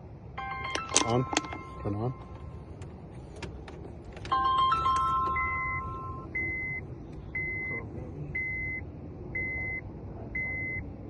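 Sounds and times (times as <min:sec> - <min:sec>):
electronic multi-tone chime: 0:04.4 - 0:06.7.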